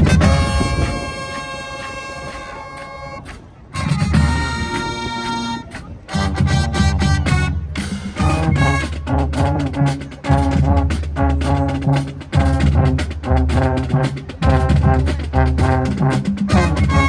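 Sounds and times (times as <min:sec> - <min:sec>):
brass horns: 0:00.0 - 0:17.0
drum-line beat: 0:00.0 - 0:17.0
marching band playing: 0:00.0 - 0:17.0.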